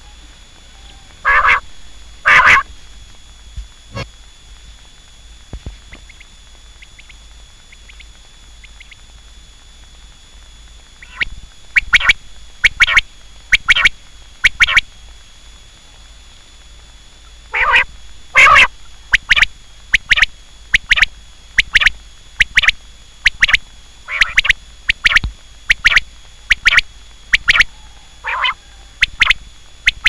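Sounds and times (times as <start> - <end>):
quail calling: 0.0 - 2.7, 11.0 - 14.8, 17.5 - 30.0.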